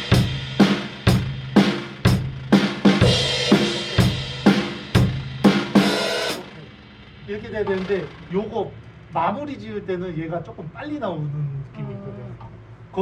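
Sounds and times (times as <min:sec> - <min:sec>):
snare and bass drum strikes: 0:00.0 - 0:06.7.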